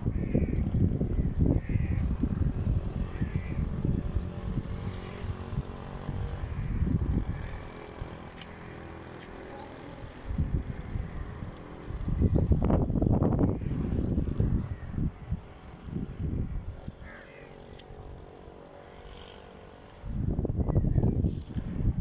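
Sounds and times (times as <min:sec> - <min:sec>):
low rumbling outdoors: 0:00.0 - 0:22.0.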